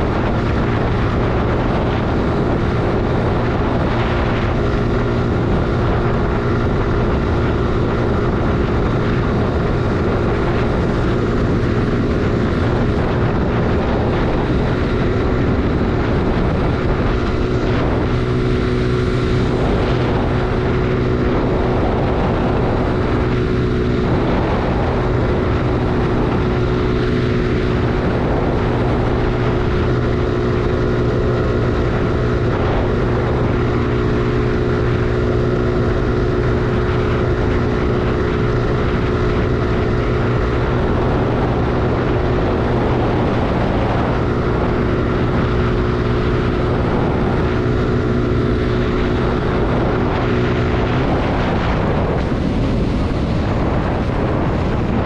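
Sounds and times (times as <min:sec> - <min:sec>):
motorcycle engine running steadily: 0:00.0 - 0:55.0.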